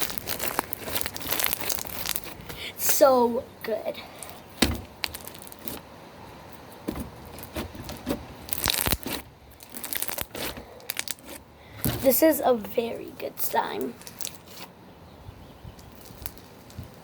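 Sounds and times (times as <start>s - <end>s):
slime crackling and popping: 0.0s - 2.5s, 5.0s - 5.8s, 8.4s - 12.1s, 13.8s - 14.7s, 15.8s - 17.0s.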